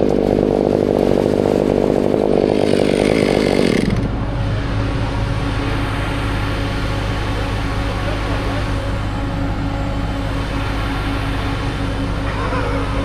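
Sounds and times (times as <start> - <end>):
chainsaw cutting: 0.0 - 4.2
steady engine hum: 0.0 - 13.0.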